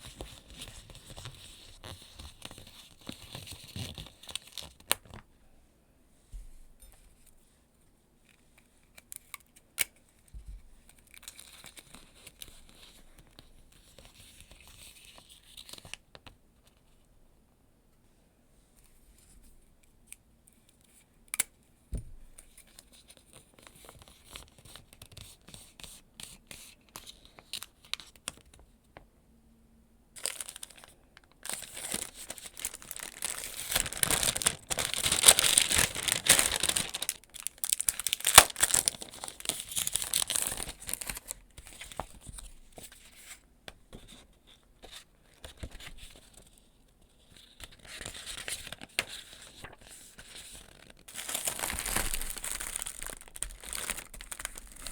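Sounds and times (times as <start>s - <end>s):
wrapping crinkling and tearing: 0.0s - 5.2s, 10.8s - 16.0s, 30.2s - 42.9s, 47.3s - 54.9s.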